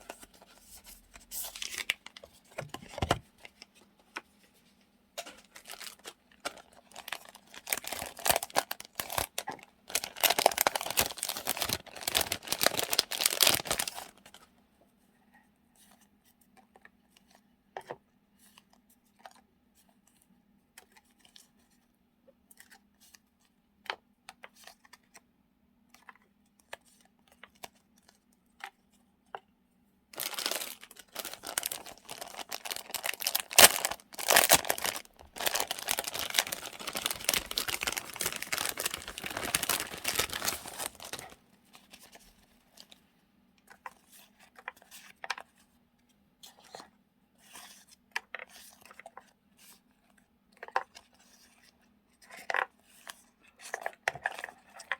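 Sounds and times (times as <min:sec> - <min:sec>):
paper and plastic packets rustling: 0:00.0 - 0:04.2, 0:05.2 - 0:14.5, 0:30.2 - 0:43.0.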